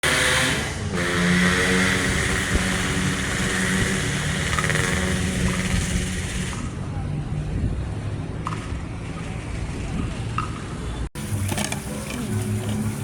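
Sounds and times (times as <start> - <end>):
vehicle engine running: 0.0 - 6.8, 11.2 - 13.0.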